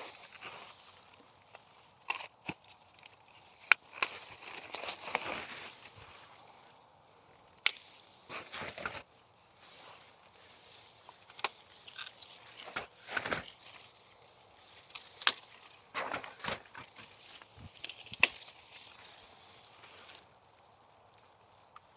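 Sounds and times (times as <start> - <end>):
leaves and branches rustling: 0.0 - 21.9
apples snapping off branches: 2.0 - 6.0, 7.6 - 9.0, 11.2 - 13.9, 14.6 - 19.0.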